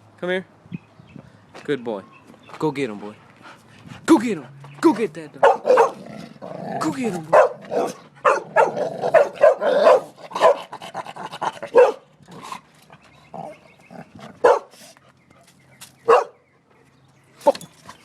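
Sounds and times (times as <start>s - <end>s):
dogs barking: 5.3s - 12.6s, 13.3s - 14.9s, 16.0s - 18.0s.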